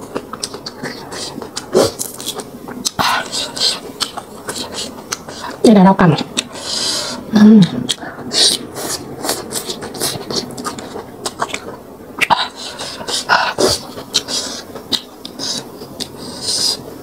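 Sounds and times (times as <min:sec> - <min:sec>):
chewing with wet crunches: 0:00.0 - 0:05.6, 0:07.8 - 0:16.8
hissing mouth noises: 0:06.4 - 0:17.0.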